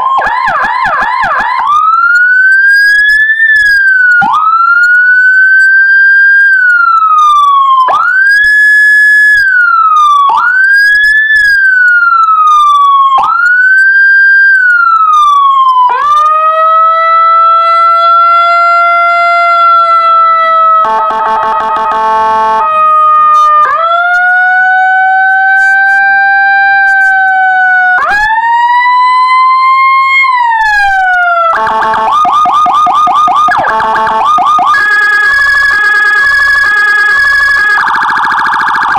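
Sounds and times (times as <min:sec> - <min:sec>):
fast pulsing siren tone: 0:00.0 - 0:05.9, 0:19.9 - 0:28.5, 0:30.2 - 0:38.9
electronic police siren wailing: 0:00.0 - 0:38.9
rapid siren warble: 0:20.7 - 0:26.8, 0:31.4 - 0:38.9.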